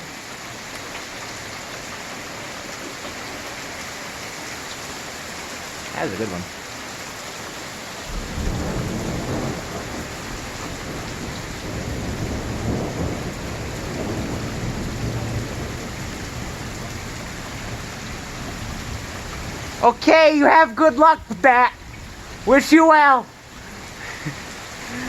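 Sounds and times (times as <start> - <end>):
steady rain: 0.0 - 25.0
rolling thunder: 8.0 - 24.4.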